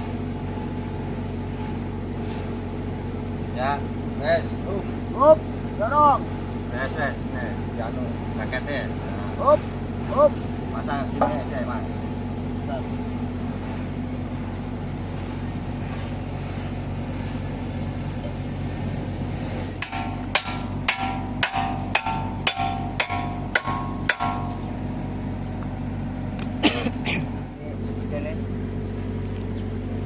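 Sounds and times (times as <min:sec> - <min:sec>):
diesel engine idling: 0:00.0 - 0:30.0
hammer striking steel: 0:19.8 - 0:24.7.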